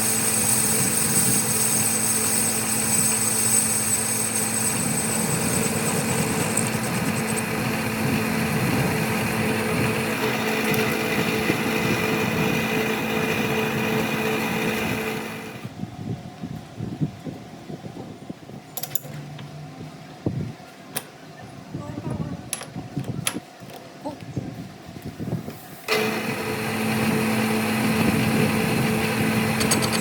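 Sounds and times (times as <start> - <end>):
high whine: 0.0 - 15.7
workshop machine running: 0.0 - 15.7, 25.9 - 30.0.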